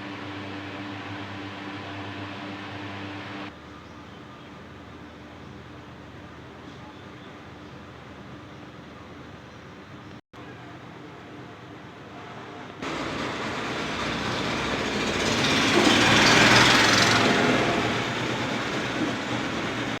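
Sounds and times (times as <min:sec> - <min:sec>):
small electric compressor humming: 0:00.0 - 0:03.5.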